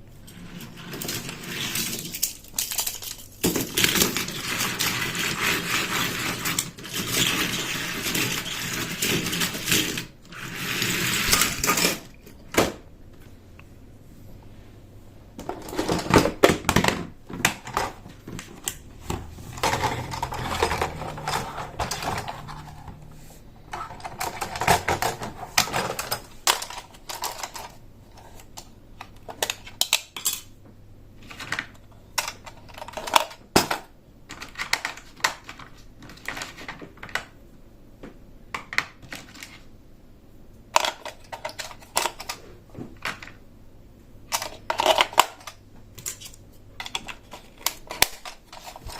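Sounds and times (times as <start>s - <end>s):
plastic toy pieces clattering: 0.2s - 12.3s, 15.4s - 23.1s, 23.7s - 30.5s, 31.2s - 37.3s, 40.7s - 42.4s, 44.2s - 48.9s.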